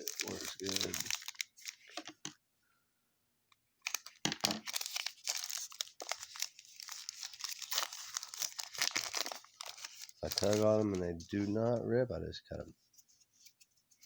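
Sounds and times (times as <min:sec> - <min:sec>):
card wrappers crinkling and tearing: 0:00.0 - 0:02.3, 0:03.8 - 0:11.6.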